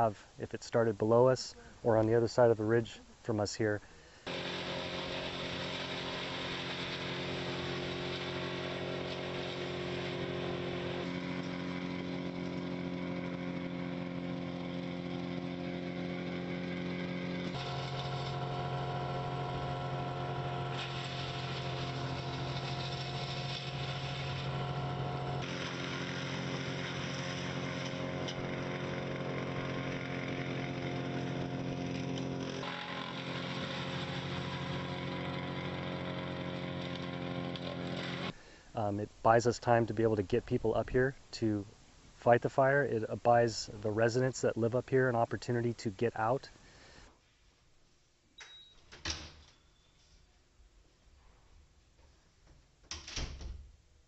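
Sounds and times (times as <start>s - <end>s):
chainsaw engine running: 4.2s - 38.6s.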